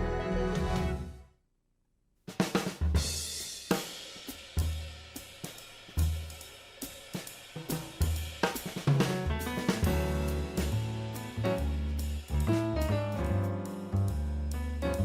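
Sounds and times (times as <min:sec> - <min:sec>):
drum kit music: 0:02.3 - 0:15.0
deep bass notes: 0:09.4 - 0:15.0.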